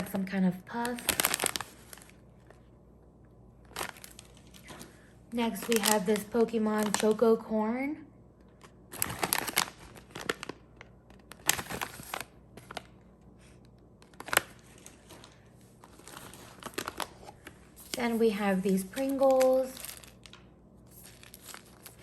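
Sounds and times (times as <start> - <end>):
plastic packaging crinkling: 0.0 - 2.7, 3.6 - 7.5, 8.4 - 22.0.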